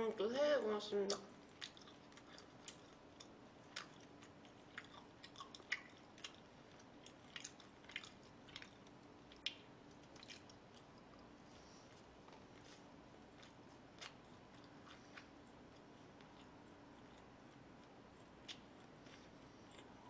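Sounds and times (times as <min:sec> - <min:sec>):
faint steady hum: 0:00.0 - 0:20.0
chewing meat mouth clicks: 0:01.1 - 0:11.3, 0:13.3 - 0:20.0.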